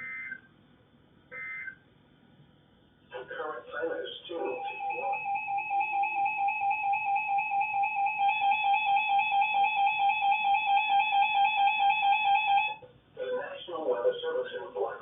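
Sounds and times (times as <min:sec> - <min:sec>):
radio alert alarm beeping: 0:01.3 - 0:01.8, 0:04.4 - 0:12.8.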